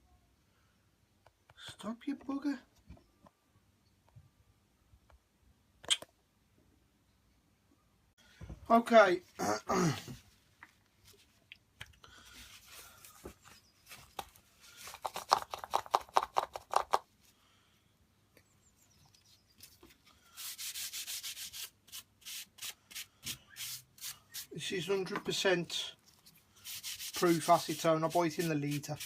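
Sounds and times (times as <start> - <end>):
hand rubbing strokes: 19.4 - 24.6, 26.1 - 29.0.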